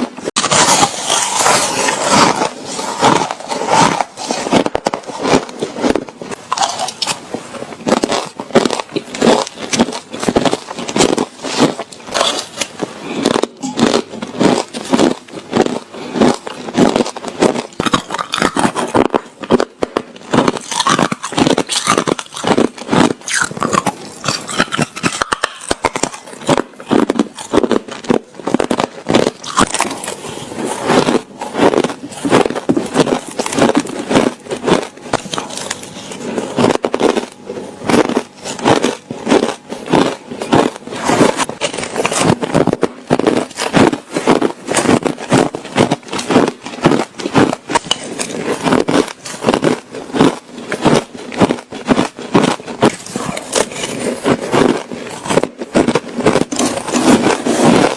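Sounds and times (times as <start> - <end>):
person crunching ice with teeth: 0.0 - 57.9.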